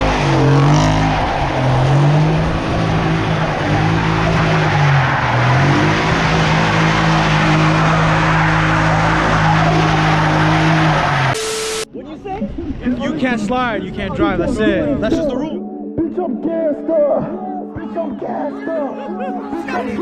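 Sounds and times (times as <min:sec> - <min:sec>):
tires squealing: 0:00.0 - 0:11.4
car engine revving: 0:00.0 - 0:11.8.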